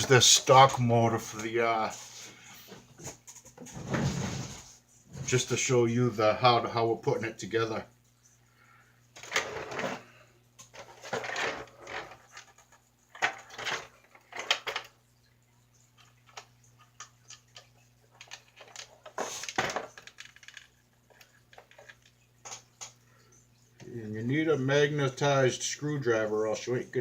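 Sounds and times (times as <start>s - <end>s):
small screws and parts rattling: 10.6s - 15.0s, 16.0s - 23.3s.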